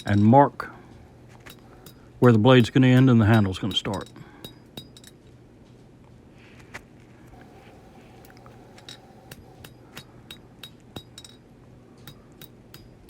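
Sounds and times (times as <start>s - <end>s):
hammer tapping steel on anvil: 1.5s - 5.2s, 8.8s - 11.4s, 12.0s - 13.0s.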